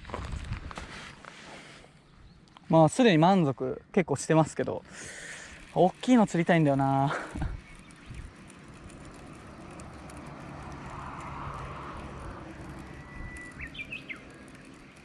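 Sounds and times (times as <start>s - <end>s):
outdoor background noise: 0.0s - 15.0s
bird whistling and chirping: 13.0s - 14.3s.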